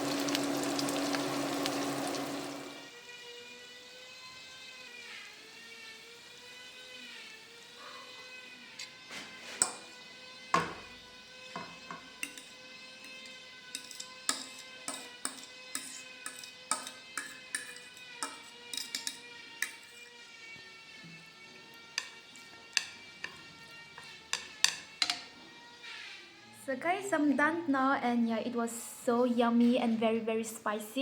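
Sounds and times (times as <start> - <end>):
utensil clinking against bowl: 12.2 - 20.0.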